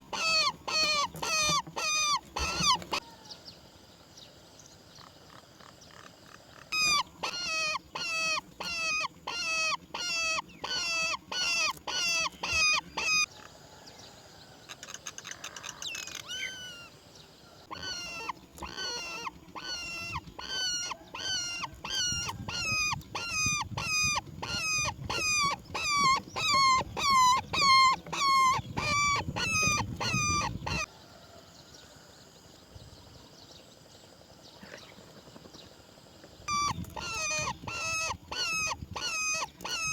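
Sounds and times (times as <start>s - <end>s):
bird calling short hooked notes: 0.2s - 3.0s.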